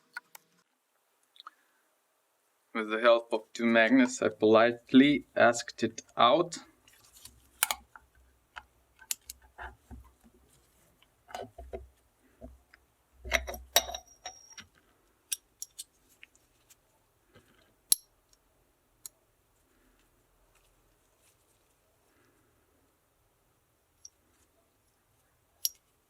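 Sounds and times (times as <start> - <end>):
small metal parts clinking: 13.3 - 14.7, 15.3 - 15.9.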